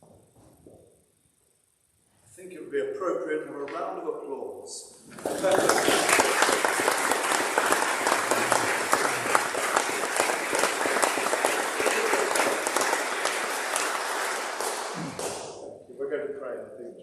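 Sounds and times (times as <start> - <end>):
congregation applauding: 5.0 - 15.6.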